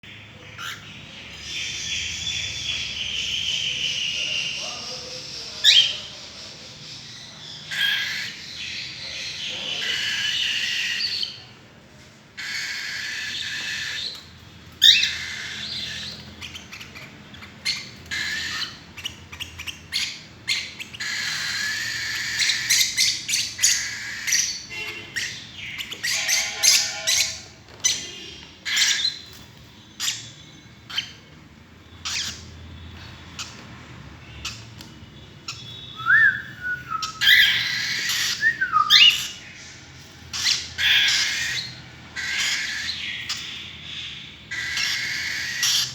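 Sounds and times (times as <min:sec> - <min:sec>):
birds chattering and chirping: 0:00.0 - 0:45.9
bird squawks: 0:12.4 - 0:14.2, 0:14.8 - 0:29.4, 0:32.0 - 0:32.5, 0:35.4 - 0:39.6, 0:40.3 - 0:45.9.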